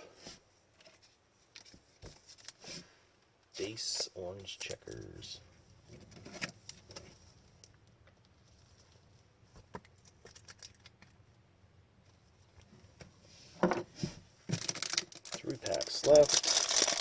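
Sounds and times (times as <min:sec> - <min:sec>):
trading cards rustling: 0:14.5 - 0:17.0.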